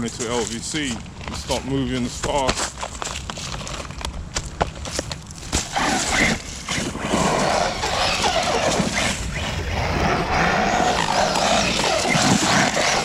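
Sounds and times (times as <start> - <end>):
tyre noise: 0.0 - 13.0
electric motor whining: 5.7 - 13.0.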